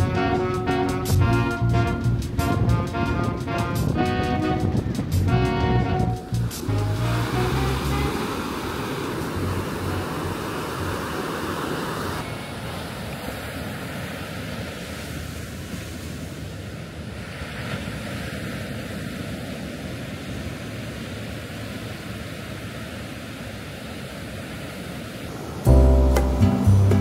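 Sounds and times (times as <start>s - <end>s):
wind buffeting microphone: 0.0s - 12.2s
ocean waves washing on beach: 0.0s - 26.8s.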